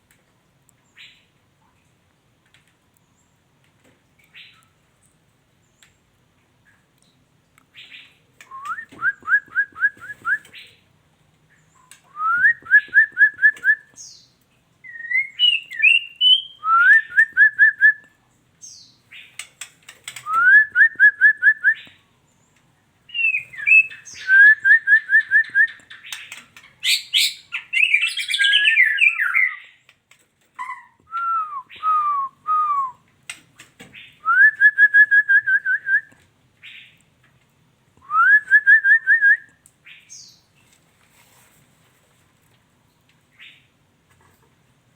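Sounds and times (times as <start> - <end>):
shama whistled calls: 26.8 - 29.7.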